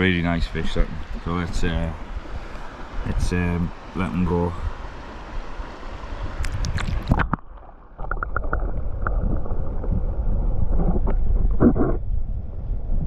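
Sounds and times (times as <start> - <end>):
water splashing: 6.3 - 12.0
muffled underwater gurgling: 8.0 - 13.0.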